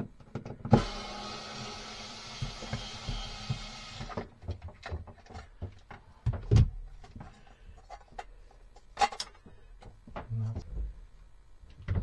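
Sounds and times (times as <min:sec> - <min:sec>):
cordless drill running: 0:00.7 - 0:04.3.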